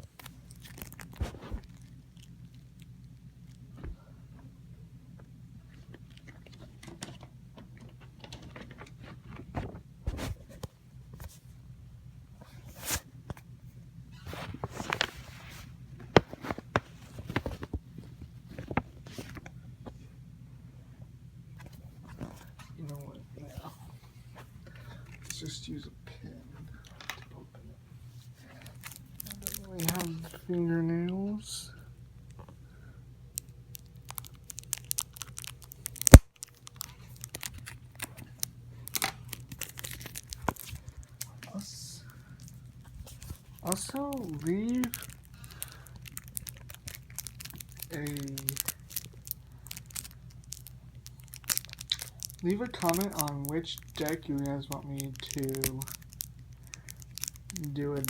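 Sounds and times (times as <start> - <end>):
packaging scraping rustle: 0.0 - 2.3, 14.2 - 19.4, 28.2 - 30.4, 33.7 - 58.0
plastic wrap tearing and crinkling: 0.0 - 2.4, 28.6 - 30.4, 33.4 - 41.6, 42.4 - 58.0
fingers clicking and tapping packaging: 28.7 - 30.2, 33.4 - 41.2, 42.4 - 58.0.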